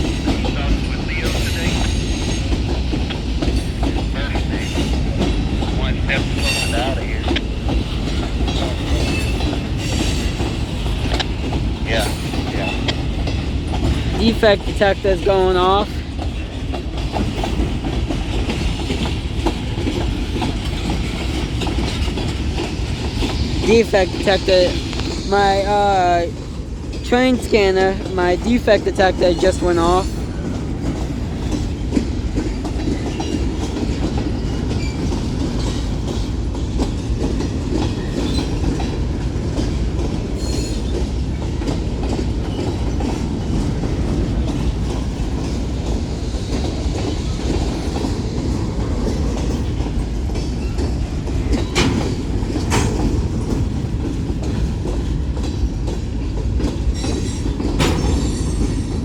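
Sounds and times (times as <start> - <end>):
wheels clattering over rail joints: 0.0 - 14.3, 16.0 - 24.2, 30.0 - 59.0
sharp clanks: 56.6 - 59.0.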